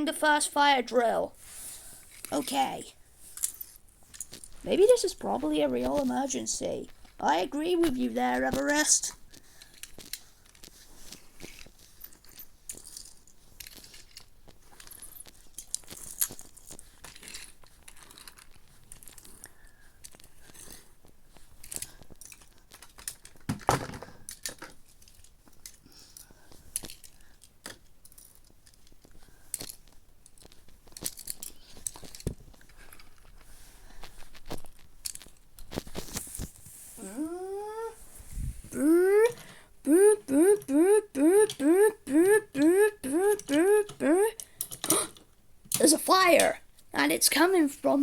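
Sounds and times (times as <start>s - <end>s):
small objects rustling and crinkling: 1.3s - 39.7s.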